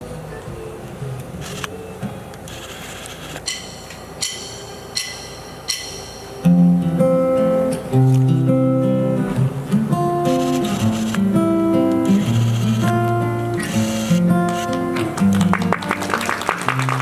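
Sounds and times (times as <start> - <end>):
acoustic guitar plucked and strummed: 5.7 - 16.0.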